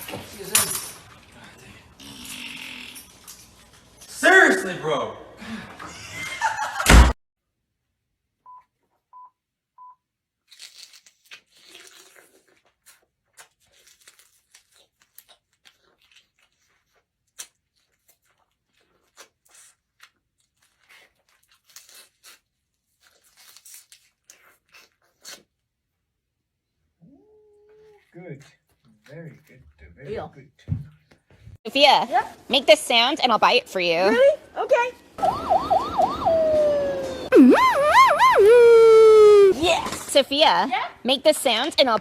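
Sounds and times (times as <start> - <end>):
faint crackling and crinkling: 10.5 - 25.6.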